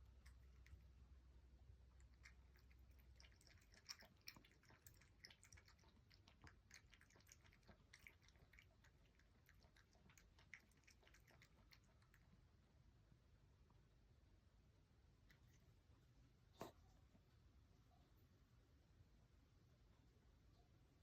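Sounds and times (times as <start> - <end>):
cat mouth clicks and smacks: 2.0 - 12.3.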